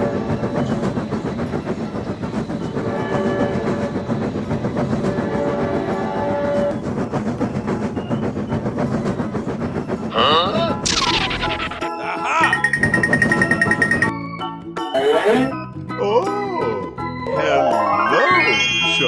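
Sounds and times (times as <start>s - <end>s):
train horn: 0.0s - 0.9s, 2.6s - 6.8s
train wheels clickety-clack: 0.0s - 14.1s.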